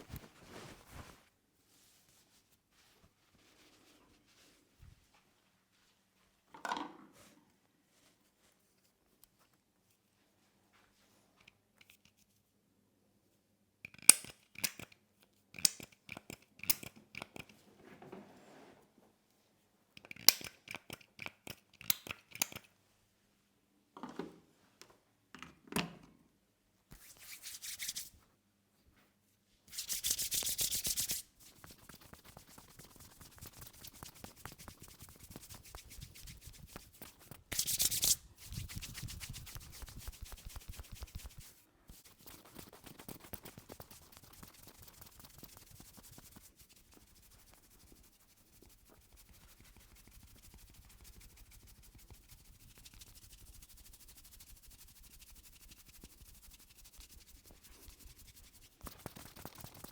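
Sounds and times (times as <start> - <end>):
hands rubbing hair: 0.0 - 4.6, 26.9 - 28.2, 29.7 - 59.9.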